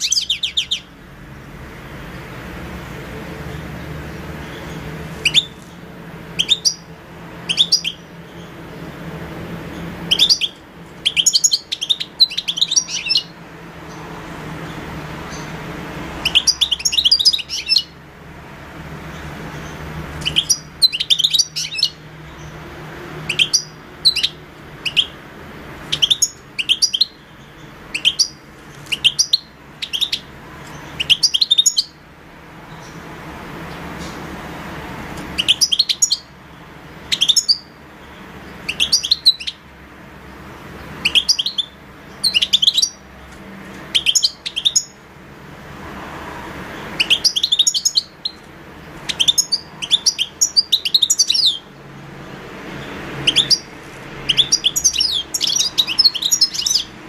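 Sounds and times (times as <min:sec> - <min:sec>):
goldfinch chirping: 0:00.0 - 0:00.9, 0:03.5 - 0:08.9, 0:09.6 - 0:15.6, 0:16.2 - 0:18.0, 0:19.1 - 0:25.2, 0:25.8 - 0:32.0, 0:35.4 - 0:36.3, 0:37.0 - 0:39.6, 0:40.3 - 0:43.0, 0:43.9 - 0:45.0, 0:46.8 - 0:51.8, 0:52.8 - 0:57.0.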